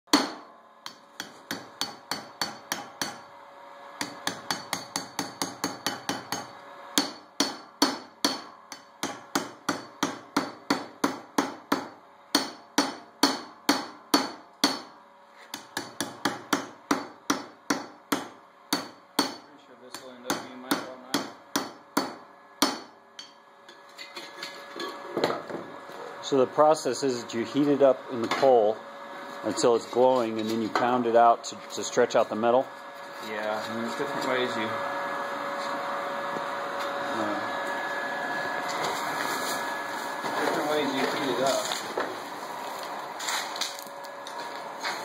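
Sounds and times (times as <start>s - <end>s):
hammer striking hot steel: 0.1s - 3.3s, 4.0s - 25.4s.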